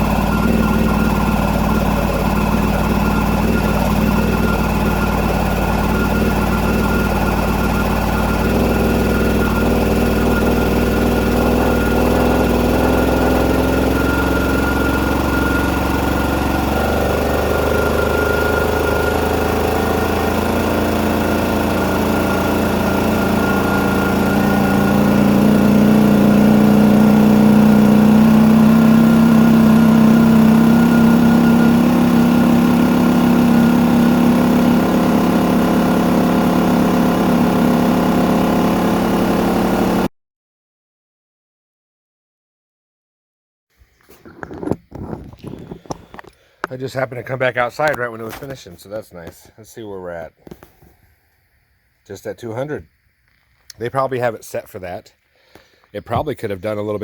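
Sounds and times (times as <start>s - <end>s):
air compressor running: 0.0s - 40.1s.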